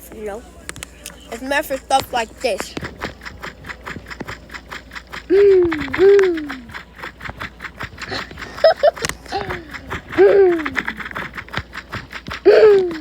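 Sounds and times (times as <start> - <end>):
person hooting: 5.3 - 6.7, 9.3 - 11.0.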